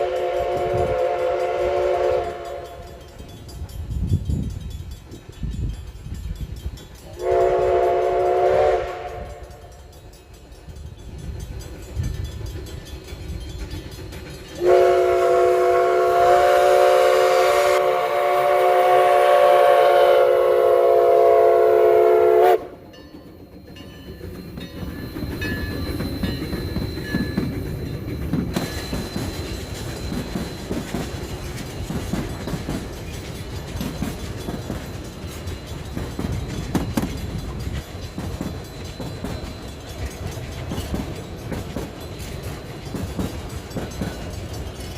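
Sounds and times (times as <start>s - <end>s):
steam whistle blast: 0.0s - 2.8s, 7.2s - 9.6s, 14.6s - 22.8s
train rumbling past: 0.0s - 44.9s
wheels clattering over rails: 22.9s - 44.9s.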